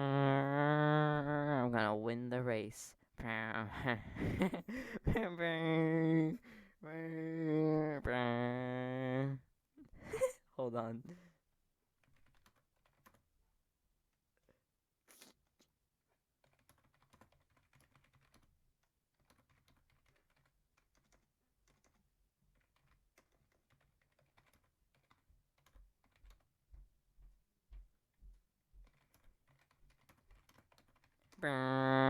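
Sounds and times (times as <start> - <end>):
typing on computer keyboard: 12.0 - 13.3, 16.4 - 26.6, 28.8 - 31.4.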